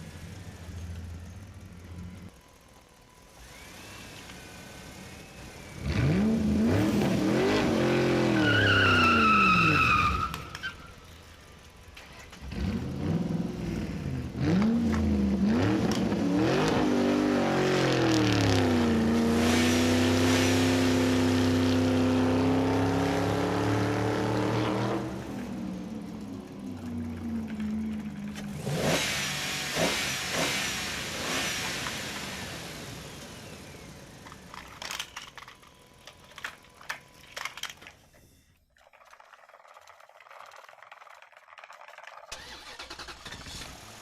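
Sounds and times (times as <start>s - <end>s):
vehicle engine revving: 3.3s - 8.9s, 12.3s - 34.4s
tire squeal: 5.0s - 11.3s.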